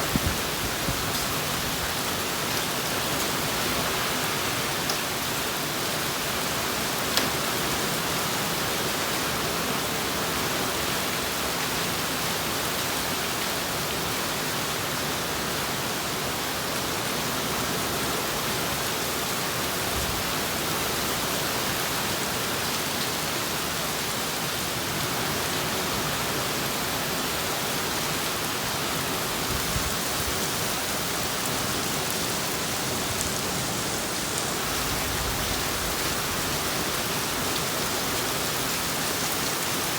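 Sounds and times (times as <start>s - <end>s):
heavy rain pouring: 0.0s - 39.9s.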